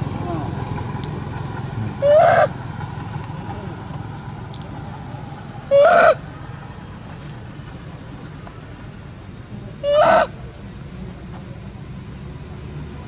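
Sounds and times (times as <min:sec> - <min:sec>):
monkey calling: 0:00.0 - 0:06.4, 0:09.7 - 0:10.5
steady background hum: 0:00.0 - 0:13.0.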